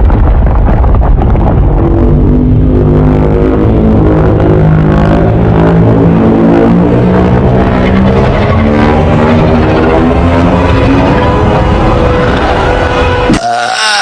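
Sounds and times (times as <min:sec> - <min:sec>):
deep burp-like growl: 0:13.2 - 0:14.0.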